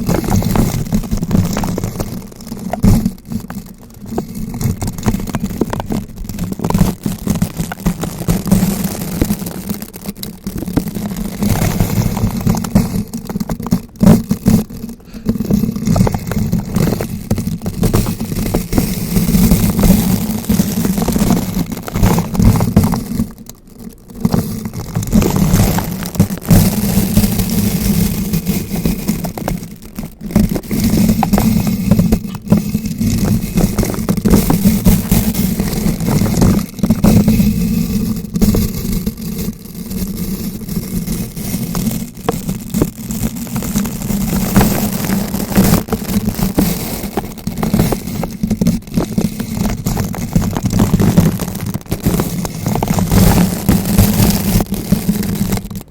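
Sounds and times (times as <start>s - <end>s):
brush scratching on microphone: 24.2s - 55.6s.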